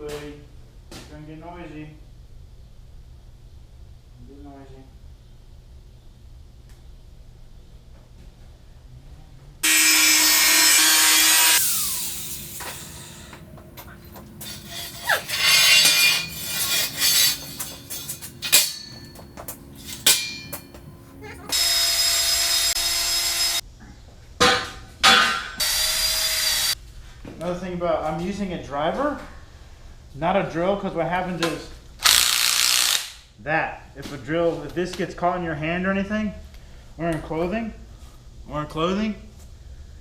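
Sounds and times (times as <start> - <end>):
power driver motor whine: 9.6 - 14.6
metal scraping and knocking: 11.6 - 21.6.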